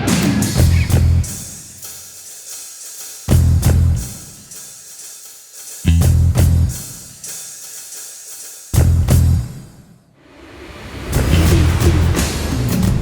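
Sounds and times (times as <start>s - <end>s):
heavy bass and drum hits: 0.0s - 1.5s, 3.3s - 4.0s, 5.9s - 6.8s, 8.8s - 9.4s, 11.1s - 13.0s
drum-led instrumental music: 0.0s - 10.0s, 11.0s - 13.0s
cymbals: 0.0s - 13.0s.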